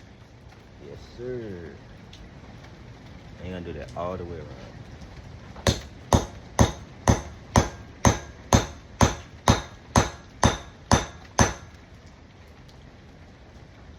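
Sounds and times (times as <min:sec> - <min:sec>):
hammer striking steel: 0:05.7 - 0:11.8.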